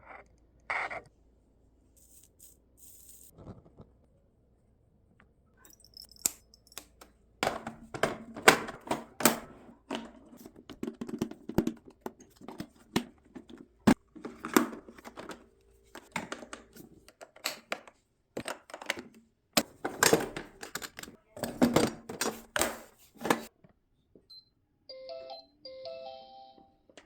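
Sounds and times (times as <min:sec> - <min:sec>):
rice cooker parts clicking and knocking: 0:05.7 - 0:23.5.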